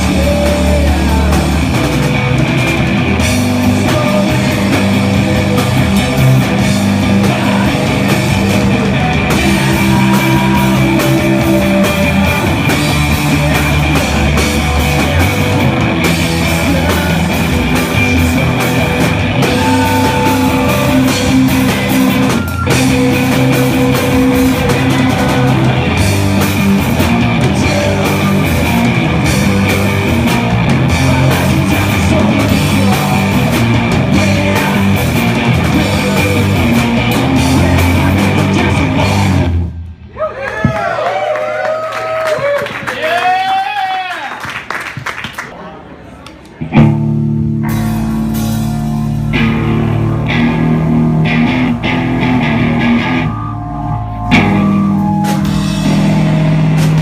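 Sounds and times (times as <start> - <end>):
punk rock band playing live: 0.0 - 40.1, 46.7 - 57.0
wavering swooping tones: 52.8 - 56.2.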